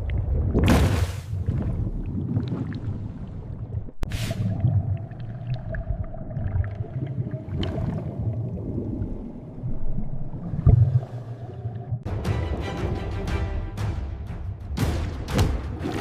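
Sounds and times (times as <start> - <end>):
underwater water rumble: 1.3 - 12.1.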